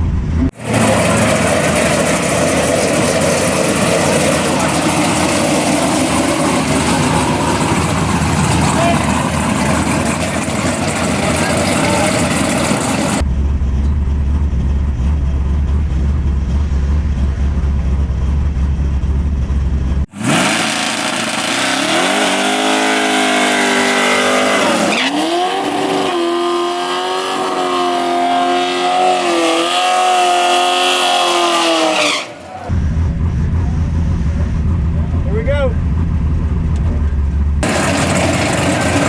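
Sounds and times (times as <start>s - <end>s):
low rumble: 0.0s - 20.1s, 32.7s - 39.0s
truck engine at full throttle: 0.0s - 39.0s.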